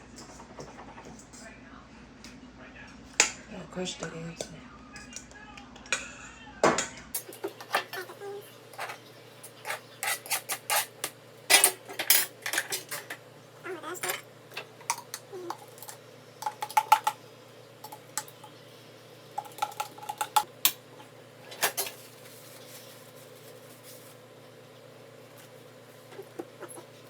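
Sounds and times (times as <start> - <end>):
utensils clinking against dishes: 6.8 - 17.2, 21.5 - 22.1.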